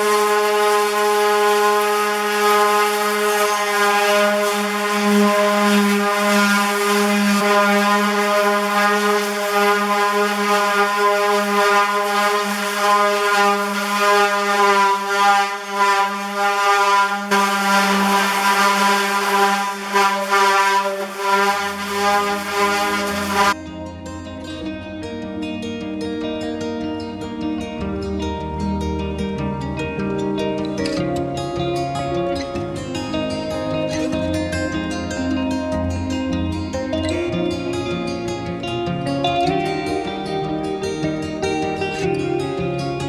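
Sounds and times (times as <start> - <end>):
power tool motor whining: 0.0 - 23.6
tool grinding on metal: 0.0 - 23.6.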